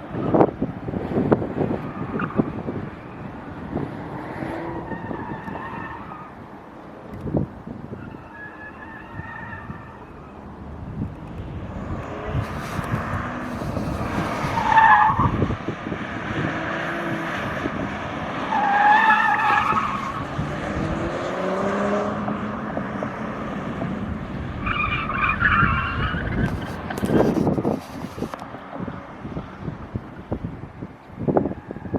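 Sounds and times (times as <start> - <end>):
car engine whine: 0.0 - 31.9
wind and road noise: 0.0 - 31.9
tyres squealing: 18.5 - 20.2.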